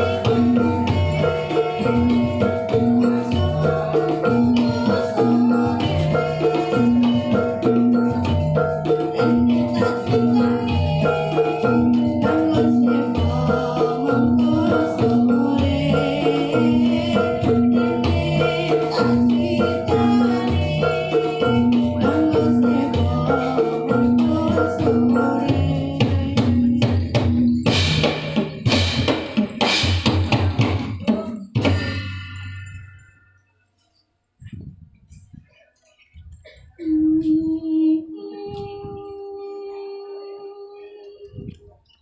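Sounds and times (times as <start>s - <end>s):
mallet percussion and drums music: 0.0s - 37.9s.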